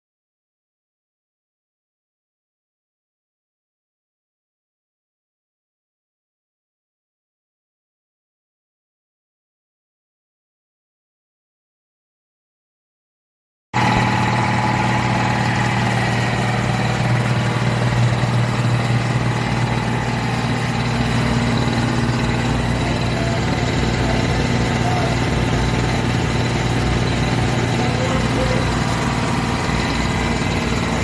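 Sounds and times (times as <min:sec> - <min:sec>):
piston compressor running: 0:13.8 - 0:31.0.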